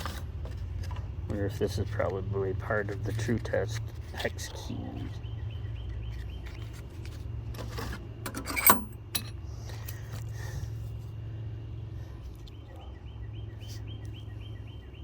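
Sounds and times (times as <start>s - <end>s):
metal hand tools clinking: 8.3s - 9.3s.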